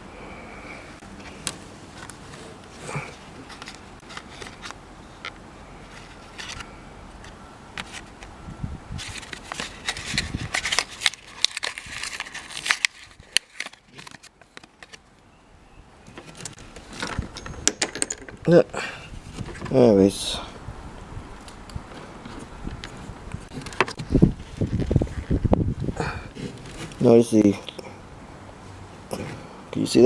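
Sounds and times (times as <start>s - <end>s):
plastic clicks and scraping: 3.4s - 8.3s, 16.1s - 18.4s, 21.4s - 25.3s.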